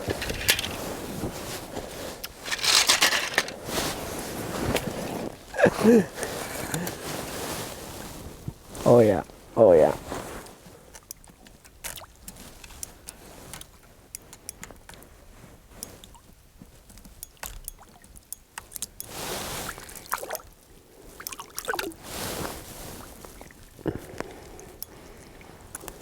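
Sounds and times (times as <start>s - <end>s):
rustling: 0.0s - 5.5s
water sloshing and splashing: 21.2s - 23.7s.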